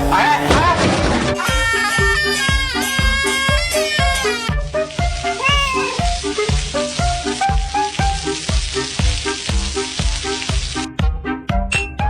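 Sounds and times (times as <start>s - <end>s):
upbeat background music: 0.0s - 12.0s
food sizzling in a pan: 2.8s - 10.9s.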